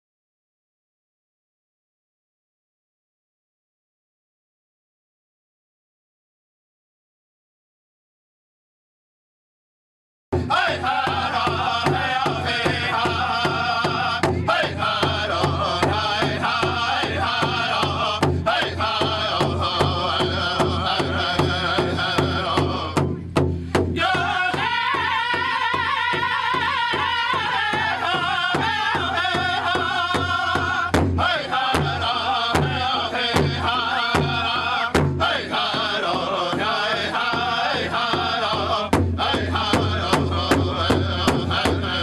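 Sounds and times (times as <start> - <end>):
big drum steady beat: 10.4 - 42.0
singers chanting together: 10.4 - 42.0.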